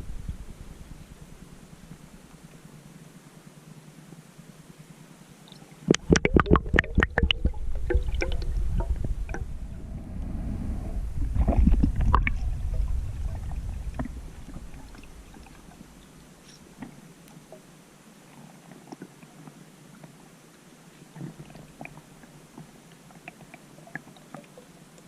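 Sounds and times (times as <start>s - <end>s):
water splashing and bubbling: 5.8s - 17.7s
low rumble: 6.1s - 16.4s.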